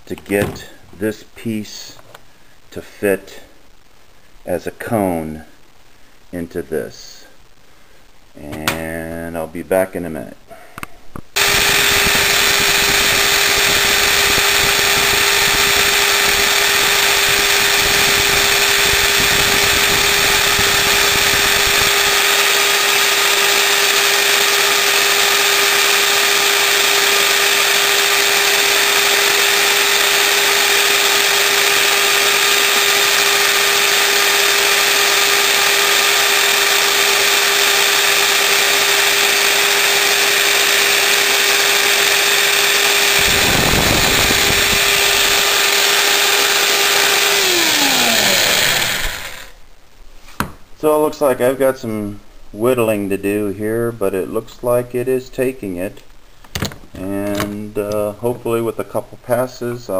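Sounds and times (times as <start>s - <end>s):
rotary tool cutting wood: 11.4s - 49.6s.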